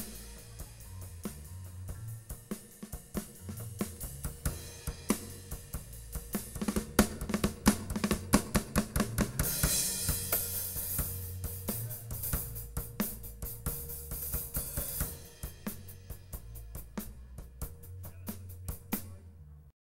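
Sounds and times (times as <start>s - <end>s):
cymbal wash: 0.0s - 2.9s, 9.4s - 17.4s
drum kit playing: 0.0s - 19.4s
low bass notes: 0.0s - 19.7s.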